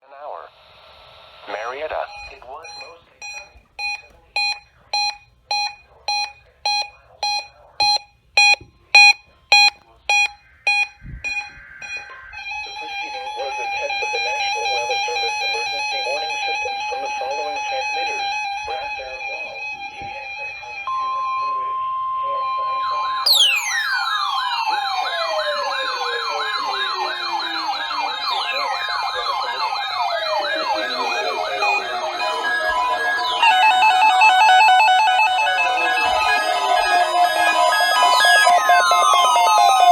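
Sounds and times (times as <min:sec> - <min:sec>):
radio alert beeping: 0:00.9 - 0:21.2, 0:23.3 - 0:39.9
siren tones winding down: 0:07.2 - 0:39.9
electronic siren wail: 0:09.0 - 0:39.9.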